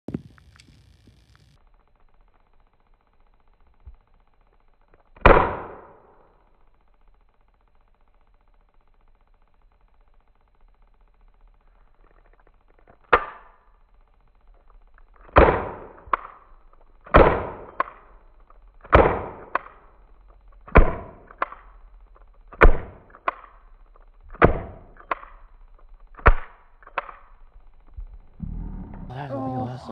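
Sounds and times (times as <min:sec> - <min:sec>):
toy gun shots: 0:05.1 - 0:06.4, 0:12.8 - 0:13.8, 0:15.2 - 0:27.5.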